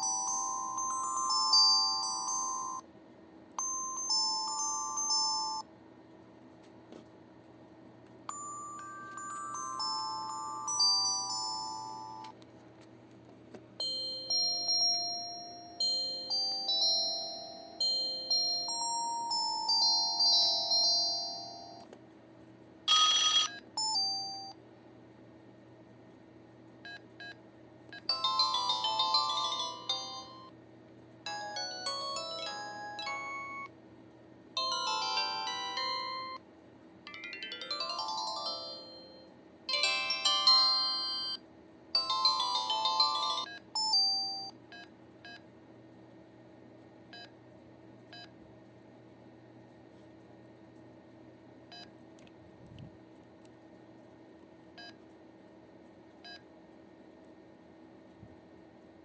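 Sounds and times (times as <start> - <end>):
phone ringtone melodies: 0.0 - 2.8, 3.6 - 5.7, 8.3 - 12.3, 13.8 - 21.8, 22.9 - 24.6, 28.1 - 30.5, 31.3 - 33.7, 34.6 - 36.4, 37.1 - 41.4, 42.0 - 44.5.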